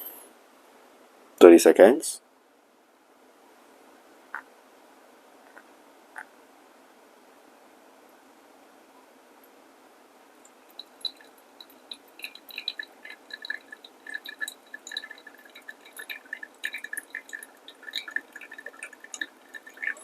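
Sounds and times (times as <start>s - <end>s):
coffee dripping into glass: 10.4s - 20.0s.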